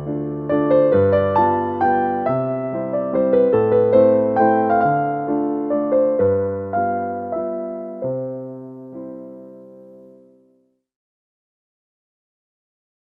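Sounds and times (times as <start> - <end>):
keyboard melody with bass notes: 0.0 - 10.2.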